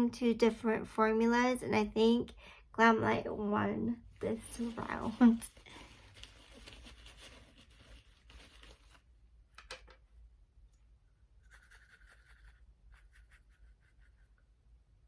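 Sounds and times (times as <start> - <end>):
faint scratchy rustling: 4.2 - 9.1.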